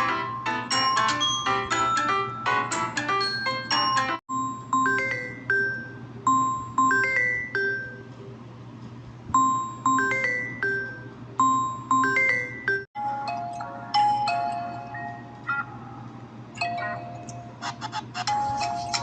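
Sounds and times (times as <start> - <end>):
phone ringtone chiming melody: 0.0 - 8.1, 9.4 - 15.5, 16.6 - 17.3.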